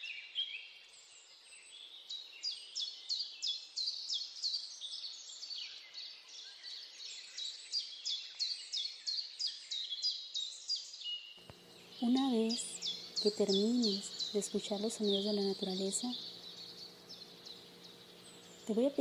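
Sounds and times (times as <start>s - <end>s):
birds chirping: 0.2s - 19.0s
soft steady hiss: 11.4s - 19.0s.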